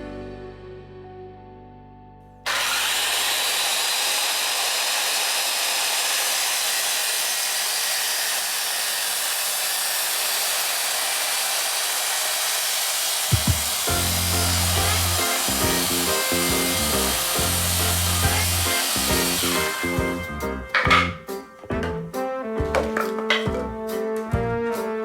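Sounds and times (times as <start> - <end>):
music chord: 0.0 - 2.0, 13.9 - 24.6
circular saw cutting wood: 2.5 - 21.8.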